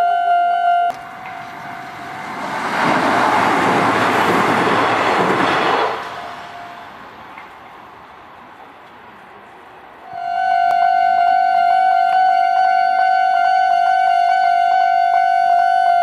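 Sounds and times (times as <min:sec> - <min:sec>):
level crossing warning sound: 0:00.0 - 0:04.1, 0:10.2 - 0:16.0
electric train passing: 0:00.9 - 0:16.0.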